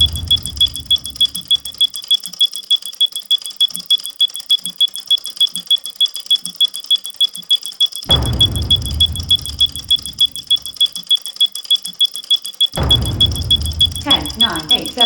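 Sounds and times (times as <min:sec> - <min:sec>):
rapid clock ticking: 0:00.0 - 0:15.0.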